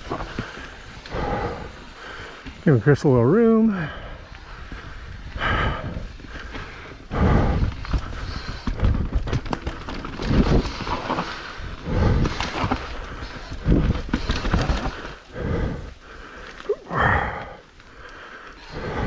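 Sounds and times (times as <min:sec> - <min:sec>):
bike rattles and clicks: 0:00.0 - 0:19.0
bike tyre noise: 0:00.0 - 0:19.0
rider breathing heavily: 0:00.0 - 0:19.0
wind rumbling on microphone: 0:03.9 - 0:17.6.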